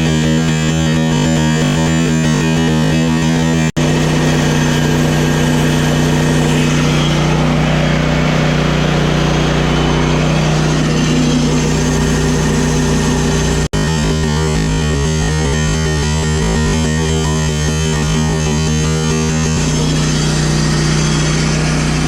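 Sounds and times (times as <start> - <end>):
engine running steadily: 0.0 - 22.0.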